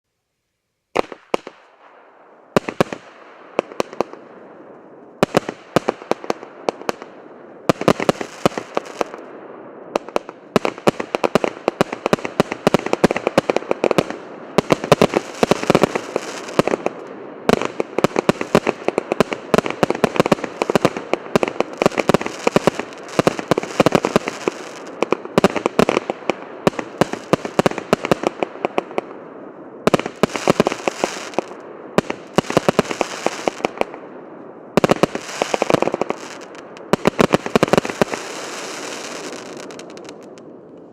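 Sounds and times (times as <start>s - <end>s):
firework crackling: 2.4s - 40.9s
firework aerial bursts: 7.6s - 9.2s, 10.0s - 29.0s, 29.9s - 34.0s, 34.8s - 40.9s.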